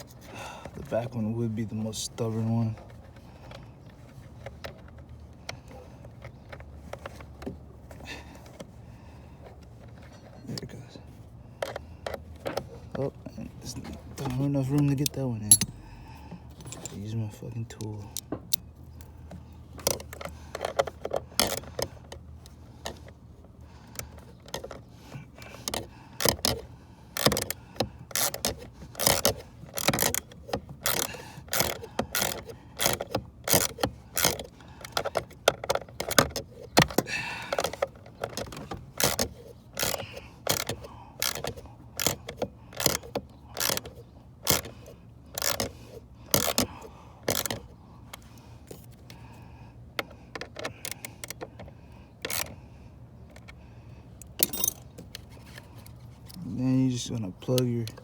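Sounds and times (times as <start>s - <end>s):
ratchet clicking: 14.8s - 15.9s, 39.8s - 44.7s, 45.4s - 46.7s.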